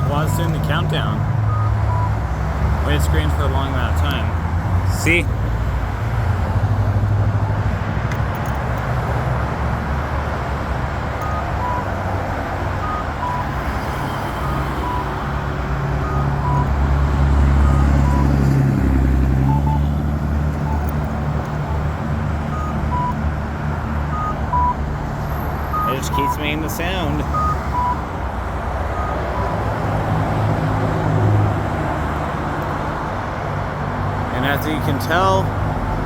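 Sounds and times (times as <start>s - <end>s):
steady traffic: 0.0s - 36.0s
vehicle passing loudly: 9.0s - 28.0s.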